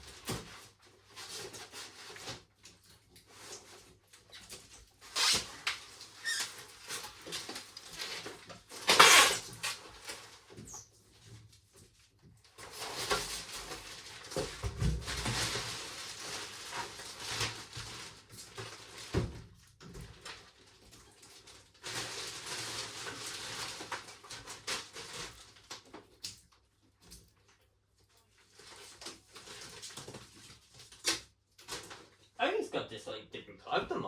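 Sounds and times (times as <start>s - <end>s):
packaging rustling and squeaking: 0.0s - 32.4s
packaging scrape: 5.0s - 10.2s.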